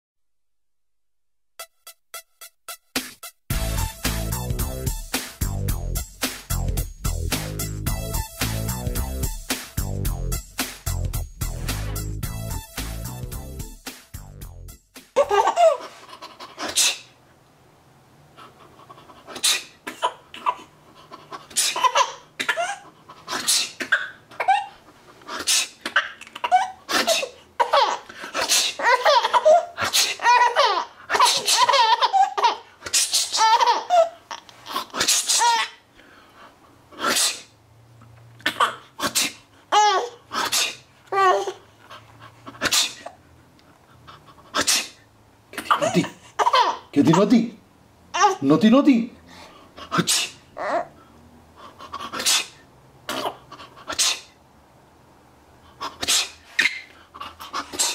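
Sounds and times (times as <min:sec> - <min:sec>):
baby laughing: 0:15.1 - 0:17.1, 0:18.5 - 0:35.8, 0:38.4 - 0:39.1, 0:39.7 - 0:40.2, 0:41.1 - 0:41.6, 0:45.6 - 0:47.4, 0:48.1 - 0:48.5, 0:55.8 - 0:57.9
man fake sneezing: 0:16.5 - 0:17.2, 0:19.3 - 0:20.0, 0:21.4 - 0:21.9, 0:23.2 - 0:24.2, 0:25.3 - 0:26.2, 0:26.9 - 0:27.4, 0:28.2 - 0:28.9, 0:29.8 - 0:30.2, 0:31.1 - 0:31.7, 0:32.8 - 0:33.4, 0:34.7 - 0:35.6, 0:36.9 - 0:37.6, 0:38.5 - 0:39.5, 0:40.3 - 0:40.9, 0:42.5 - 0:43.2, 0:44.5 - 0:45.0, 0:45.6 - 0:46.3, 0:49.8 - 0:50.6, 0:51.8 - 0:54.4, 0:55.8 - 0:56.9, 0:57.5 - 0:57.9.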